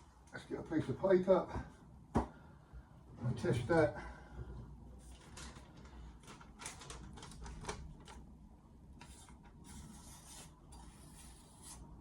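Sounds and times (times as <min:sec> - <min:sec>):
knife scraping paper: 0:09.0 - 0:12.0.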